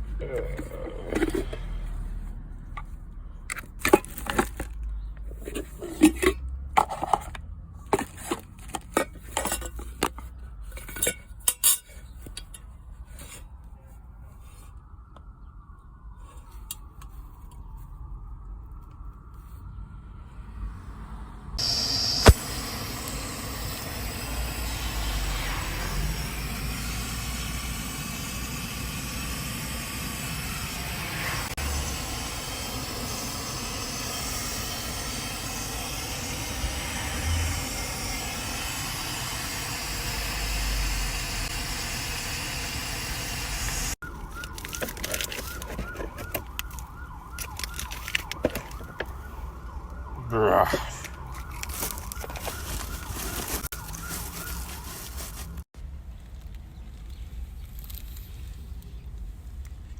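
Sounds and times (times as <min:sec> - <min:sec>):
emergency vehicle siren: 0:00.0 - 0:08.4, 0:12.9 - 0:55.7
traffic rumble: 0:00.0 - 0:59.9
steady high tone: 0:21.6 - 0:42.1.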